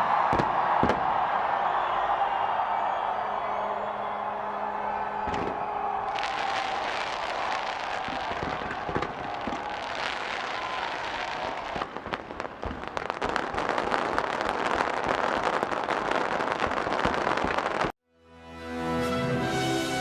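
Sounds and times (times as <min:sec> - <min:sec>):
fireworks crackling and popping: 0:00.0 - 0:01.2, 0:05.3 - 0:18.0
music: 0:18.0 - 0:20.0.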